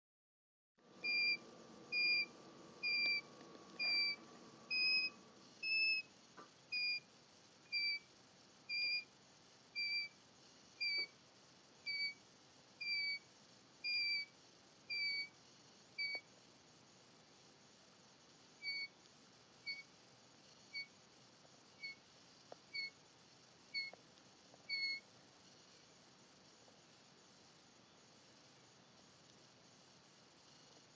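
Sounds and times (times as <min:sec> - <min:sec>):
baby chick snoring peeps: 0:01.0 - 0:06.1, 0:06.7 - 0:07.0, 0:07.7 - 0:08.1, 0:08.7 - 0:09.1, 0:09.8 - 0:11.2, 0:11.8 - 0:12.2, 0:12.8 - 0:16.3, 0:18.6 - 0:19.0, 0:19.6 - 0:21.0, 0:21.8 - 0:22.0, 0:22.7 - 0:23.0, 0:23.7 - 0:24.0, 0:24.7 - 0:26.0, 0:30.4 - 0:30.9.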